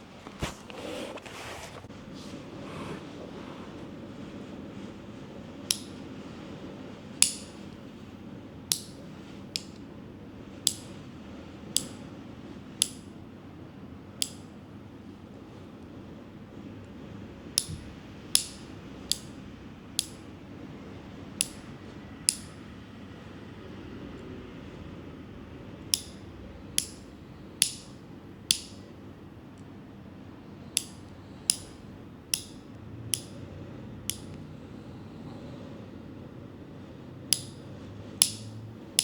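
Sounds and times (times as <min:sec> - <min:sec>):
nail clippers snipping: 0:07.2 - 0:07.6, 0:08.7 - 0:09.8, 0:18.4 - 0:19.4, 0:20.0 - 0:20.2, 0:21.4 - 0:21.7, 0:22.3 - 0:22.6, 0:25.9 - 0:28.8, 0:30.8 - 0:33.4, 0:34.1 - 0:34.4, 0:37.3 - 0:37.6, 0:38.2 - 0:39.0.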